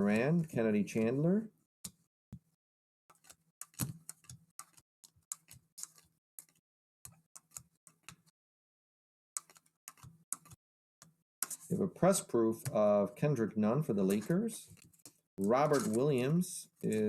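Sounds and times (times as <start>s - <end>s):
trading cards clicking and tapping: 3.1s - 8.3s, 9.4s - 10.6s, 14.0s - 17.0s.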